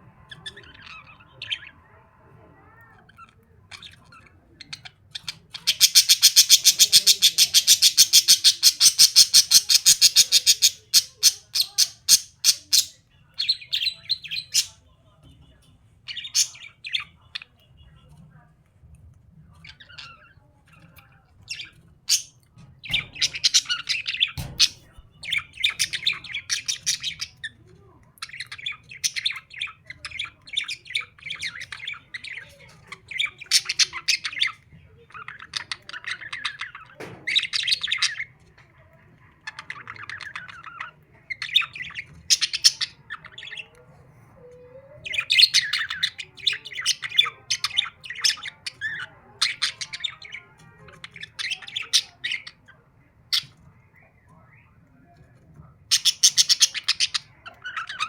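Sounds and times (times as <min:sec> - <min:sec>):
parrots chattering and squawking: 0:00.2 - 0:02.0, 0:02.6 - 0:14.8, 0:16.0 - 0:17.6, 0:19.5 - 0:53.7, 0:55.8 - 0:58.0.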